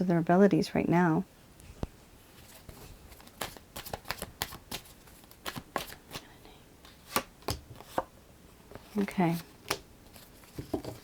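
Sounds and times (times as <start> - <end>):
cards being shuffled: 2.4 - 8.1.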